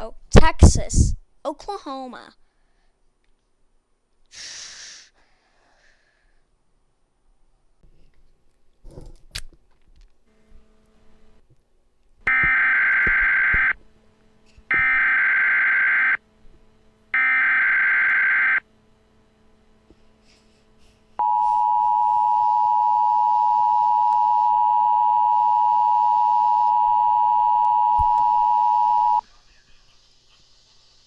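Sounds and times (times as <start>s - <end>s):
two-tone attention signal: 12.3s - 13.8s, 21.2s - 29.2s
warbling digital data tones: 14.7s - 16.2s, 17.2s - 18.6s.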